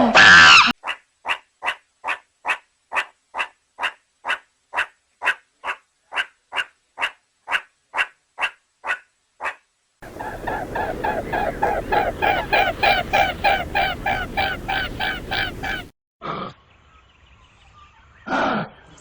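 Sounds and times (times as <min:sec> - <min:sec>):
waterfowl honking: 0:10.0 - 0:15.9.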